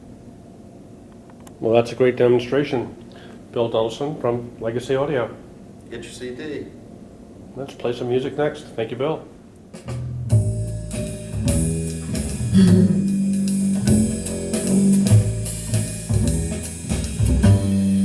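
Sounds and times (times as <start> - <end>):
drum kit: 9.7 - 18.0
bass line: 9.9 - 18.0
electric guitar: 11.4 - 18.0.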